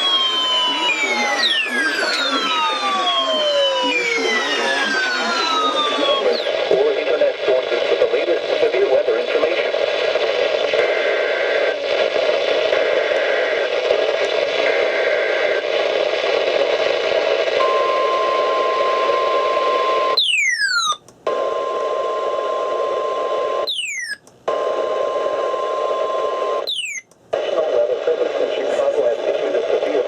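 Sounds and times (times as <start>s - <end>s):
falling chirps: 0.0s - 6.6s, 23.7s - 24.2s, 26.7s - 27.0s
steady warning alarm tone: 0.0s - 6.7s, 20.1s - 21.0s, 23.6s - 24.2s, 25.0s - 27.0s
faint data header bursts: 0.0s - 9.6s
heavy radio static: 0.0s - 13.7s, 27.4s - 30.0s.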